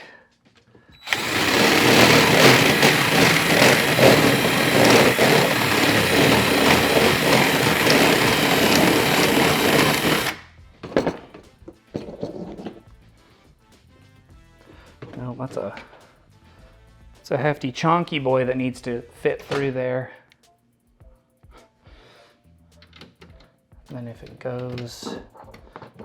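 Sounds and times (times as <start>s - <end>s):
small power tool running: 1.0s - 10.4s.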